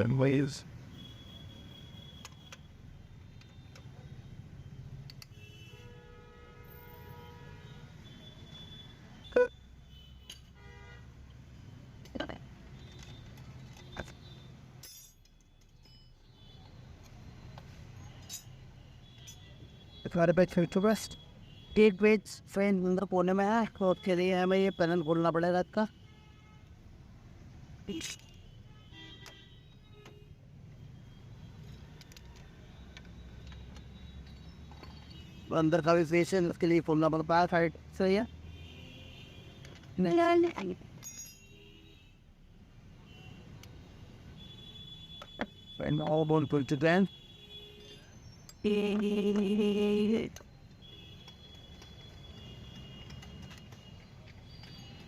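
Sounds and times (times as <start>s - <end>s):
metallic clinks of tools and bolts: 10.2s - 10.6s, 12.7s - 19.7s, 27.9s - 28.4s, 31.5s - 35.5s, 39.6s - 41.7s, 47.7s - 48.7s.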